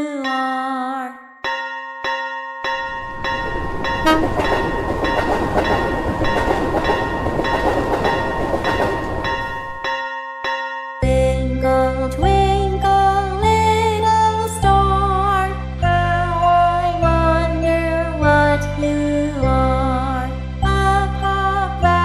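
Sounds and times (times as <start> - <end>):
level-crossing warning bell: 1.4 - 11.0
rhythmic rail clatter: 2.8 - 10.0
train horn toot: 3.9 - 4.7.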